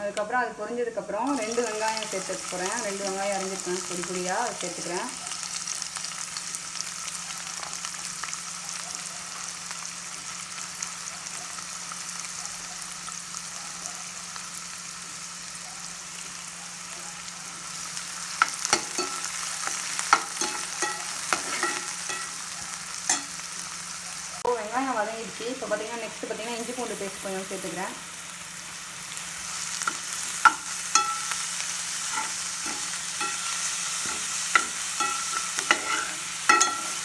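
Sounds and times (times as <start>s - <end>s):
onions sizzling in hot oil: 0.0s - 37.0s
utensil scraping a pan: 18.4s - 22.4s, 32.0s - 37.0s.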